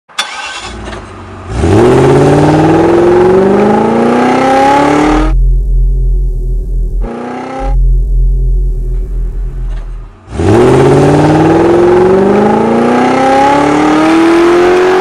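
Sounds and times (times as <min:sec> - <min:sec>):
car engine accelerating: 0:00.2 - 0:15.0
low steady hum: 0:04.9 - 0:11.2.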